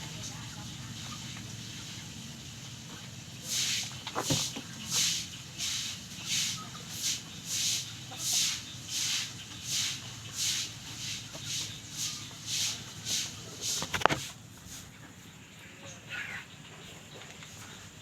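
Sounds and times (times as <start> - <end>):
chicken hissing breaths: 3.4 - 14.9.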